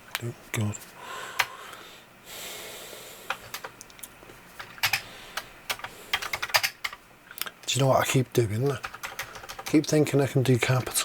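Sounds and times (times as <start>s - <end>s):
person breathing out: 1.0s - 3.3s
computer keyboard clicks: 3.3s - 5.0s, 5.7s - 7.0s, 8.6s - 9.8s.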